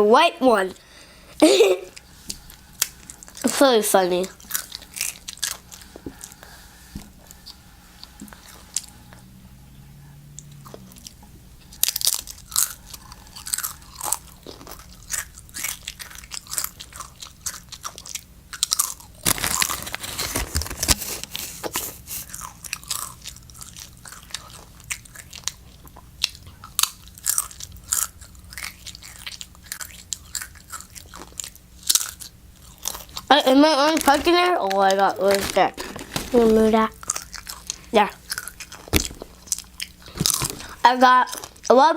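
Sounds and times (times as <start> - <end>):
tortilla chips crunching: 4.2 - 6.5, 10.4 - 41.7.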